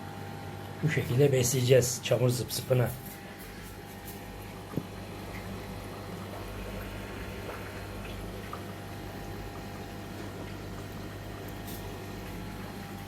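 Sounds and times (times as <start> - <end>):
aquarium filter pump hum: 0.0 - 13.0
water bubbling and trickling: 4.4 - 13.0.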